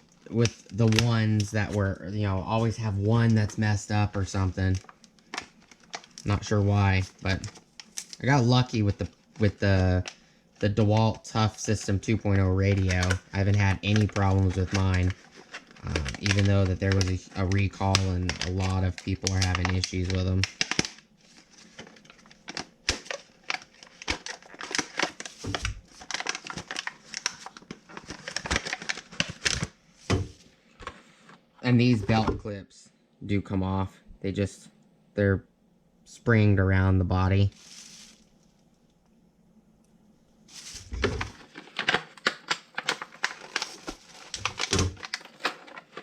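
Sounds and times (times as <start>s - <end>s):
plastic packaging crinkling: 0.0s - 30.5s, 37.5s - 38.6s, 40.5s - 46.0s
plastic items clicking and clattering: 12.6s - 21.0s, 21.7s - 31.0s, 40.6s - 46.0s.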